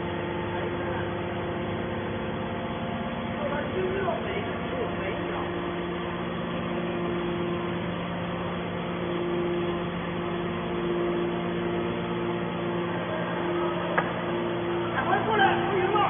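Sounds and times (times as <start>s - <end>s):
hydraulic power unit humming: 0.0s - 16.0s.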